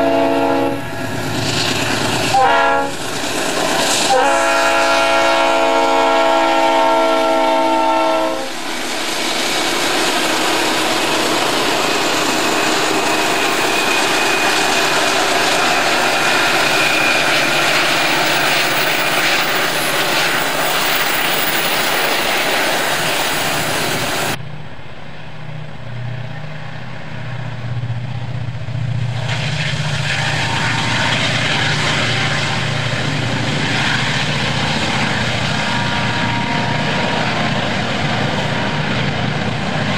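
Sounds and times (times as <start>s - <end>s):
locomotive air horn: 0.0s - 1.0s, 2.2s - 3.0s, 4.0s - 8.7s, 30.1s - 31.4s, 35.6s - 37.3s
freight train rolling by: 0.0s - 39.9s
locomotive engine drone: 0.0s - 39.9s.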